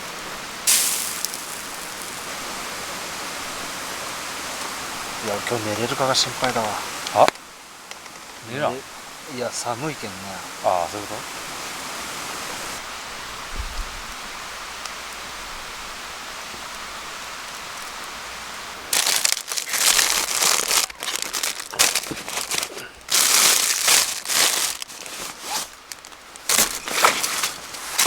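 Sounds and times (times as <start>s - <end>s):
background hiss: 0.0s - 28.0s
crisp material crinkling: 0.7s - 3.0s, 18.9s - 28.0s.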